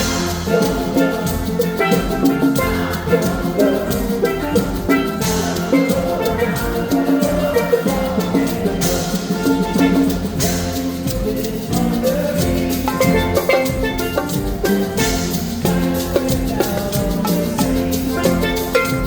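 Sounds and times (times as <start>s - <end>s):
drum kit: 0.0s - 19.0s
hand percussion: 0.0s - 19.0s
marimba: 0.0s - 19.0s
steel pan melody: 0.0s - 19.0s.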